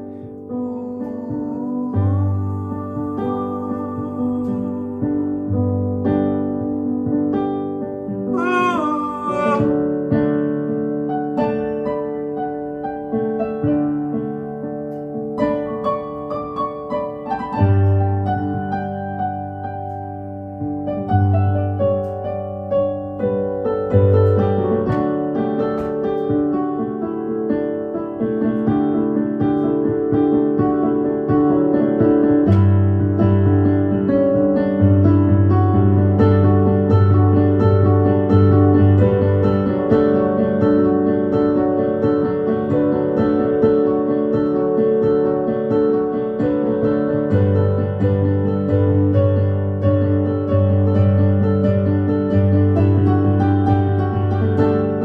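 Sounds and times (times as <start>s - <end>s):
piano-like keyboard chords: 0.0s - 55.0s
wavering high note: 8.3s - 9.8s.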